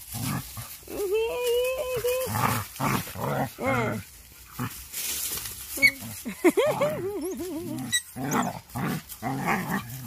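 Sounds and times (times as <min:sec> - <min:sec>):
dogs growling: 0:02.2 - 0:04.9, 0:06.0 - 0:10.0
dog whining: 0:06.7 - 0:08.6.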